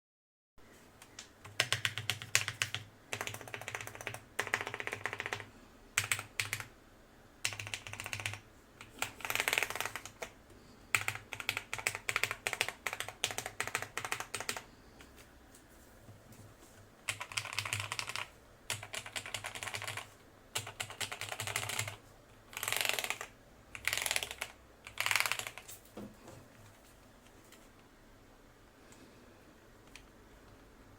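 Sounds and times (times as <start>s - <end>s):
mechanical keyboard typing: 1.2s - 6.8s, 7.4s - 14.7s, 17.0s - 25.9s.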